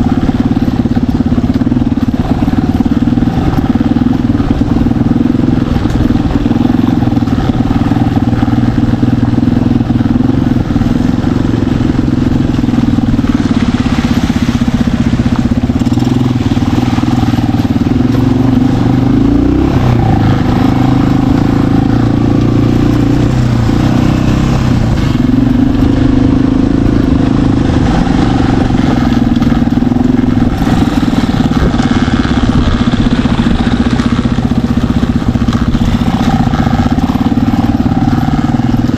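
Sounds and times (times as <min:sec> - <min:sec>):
dirt bike engine running: 0:00.0 - 0:38.9.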